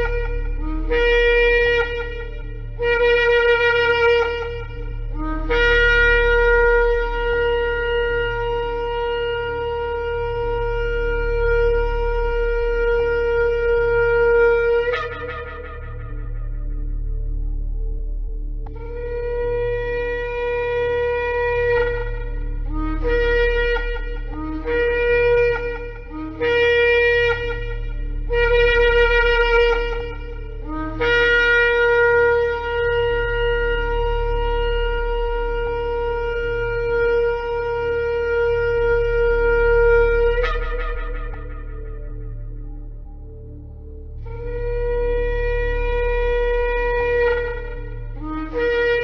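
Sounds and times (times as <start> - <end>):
low steady hum: 0.0 - 49.0
shofar blasts: 0.0 - 49.0.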